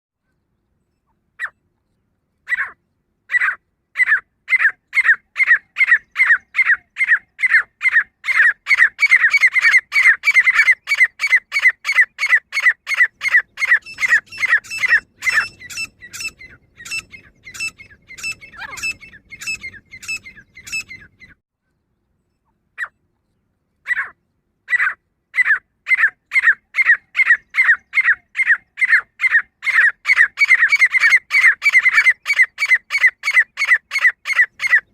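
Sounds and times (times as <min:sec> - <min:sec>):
francolin calling: 0:02.4 - 0:21.4.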